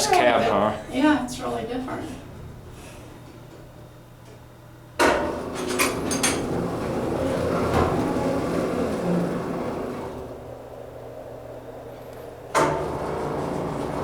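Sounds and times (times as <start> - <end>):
elevator running rumble: 0.0 - 14.0
elevator clunk: 5.0 - 10.6, 12.0 - 14.0.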